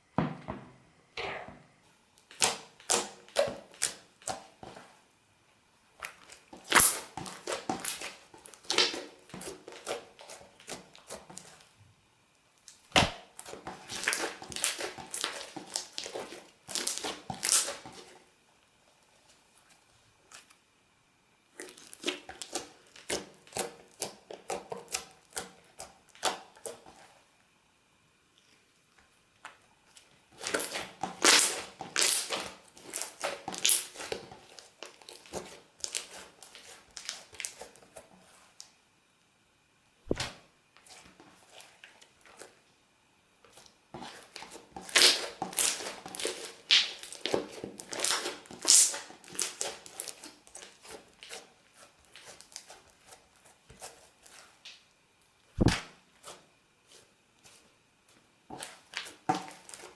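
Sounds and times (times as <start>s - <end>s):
slime squeezed by hand crackling: 55.6s - 55.9s.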